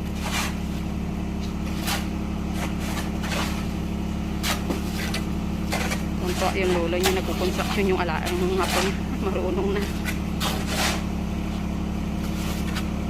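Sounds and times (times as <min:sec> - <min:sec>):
low machine hum: 0:00.0 - 0:13.0
short scrapes or knocks: 0:10.0 - 0:11.1.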